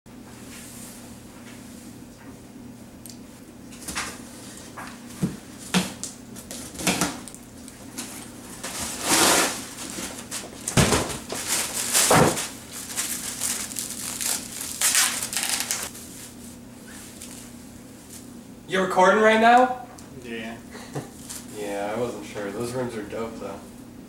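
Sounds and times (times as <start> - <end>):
wrapping material crinkling: 11.3 - 16.0.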